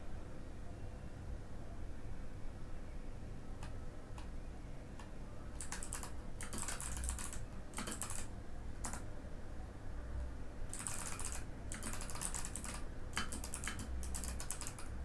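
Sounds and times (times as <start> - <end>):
mechanical keyboard typing: 5.6 - 9.0, 10.7 - 15.0.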